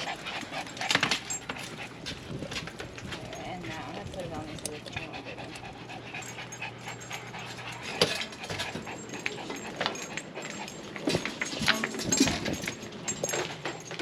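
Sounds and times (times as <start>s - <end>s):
dog whimpering: 4.6s - 13.2s.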